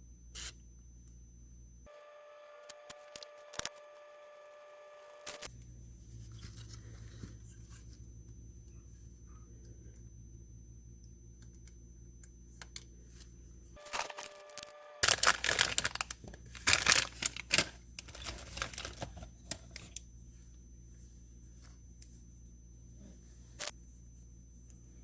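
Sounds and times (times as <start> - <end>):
low hum: 3.9 - 25.0
crinkling and rustling handling noises: 6.0 - 8.0, 12.6 - 20.5.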